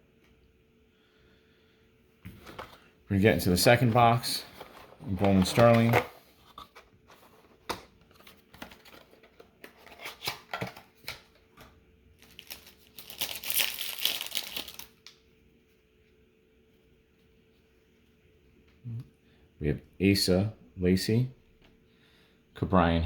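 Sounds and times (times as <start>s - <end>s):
packaging crinkling and tearing: 8.2s - 11.3s, 12.2s - 15.2s.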